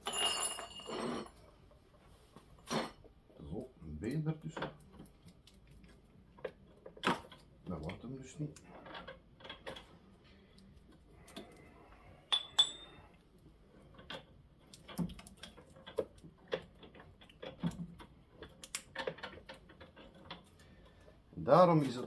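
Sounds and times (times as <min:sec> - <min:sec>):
ringing metallic clink: 0:00.0 - 0:01.3, 0:12.3 - 0:13.0
metal tools clinking: 0:00.0 - 0:01.4, 0:12.3 - 0:13.0.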